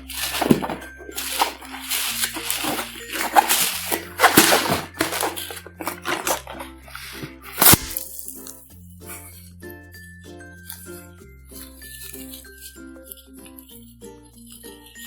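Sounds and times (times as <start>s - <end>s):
slime squishing and crackling: 0.0s - 8.6s
light background music: 0.0s - 15.0s.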